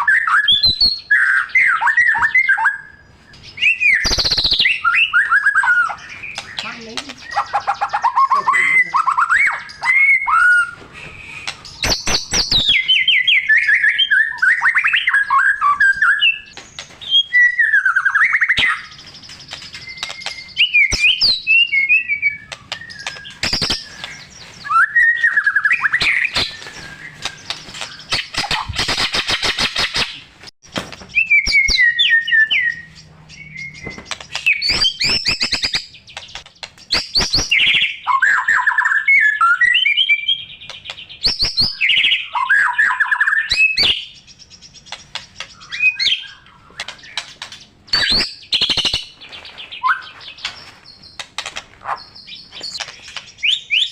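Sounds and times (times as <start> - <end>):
bird singing whistles and warbles: 0.0 - 30.2, 31.1 - 53.9.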